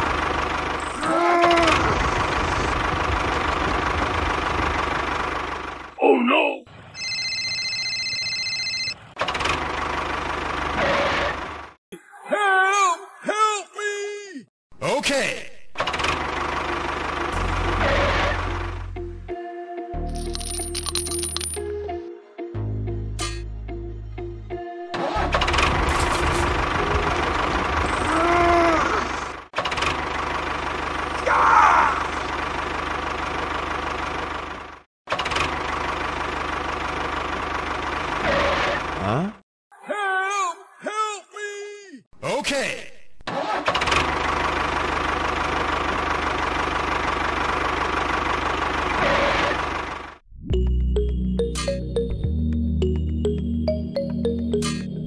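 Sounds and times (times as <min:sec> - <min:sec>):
engine knocking rumble: 0:00.0 - 0:01.0, 0:01.6 - 0:06.0, 0:15.9 - 0:18.8, 0:25.5 - 0:28.2, 0:29.1 - 0:31.2, 0:32.2 - 0:38.3, 0:44.0 - 0:50.2
music: 0:18.8 - 0:25.8, 0:50.4 - 0:55.0.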